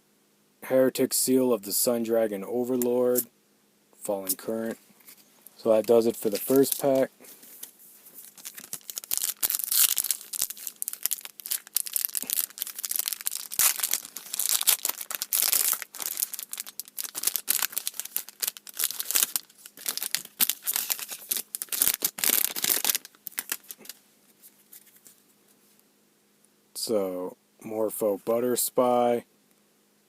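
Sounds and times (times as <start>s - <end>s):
foil wrapper tearing and crinkling: 5.8s - 7.1s, 8.2s - 24.0s.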